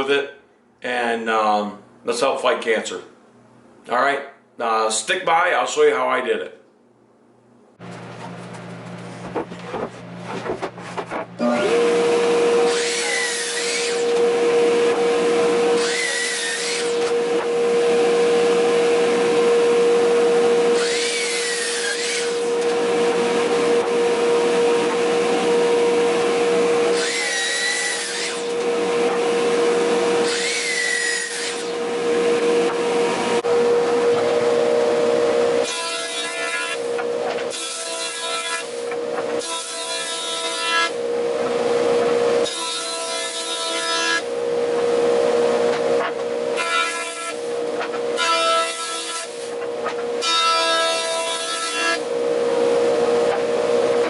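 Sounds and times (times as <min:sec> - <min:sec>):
saw cutting wood: 0:09.7 - 0:52.2
power tool motor whine: 0:11.4 - 0:35.7.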